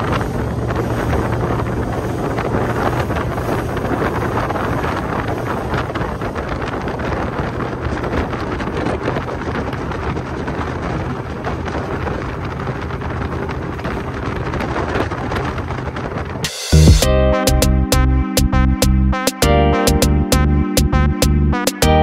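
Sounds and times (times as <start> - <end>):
wind buffeting microphone: 0.0 - 16.5
outboard engine drone: 0.0 - 22.0.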